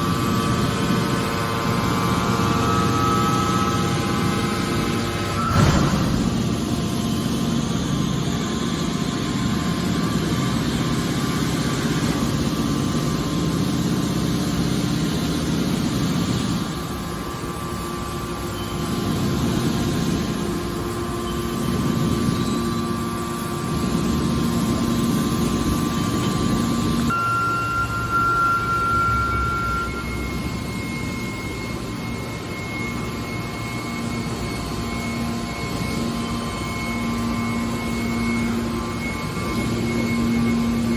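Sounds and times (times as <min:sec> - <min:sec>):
baling machinery drone: 0:00.0 - 0:40.9.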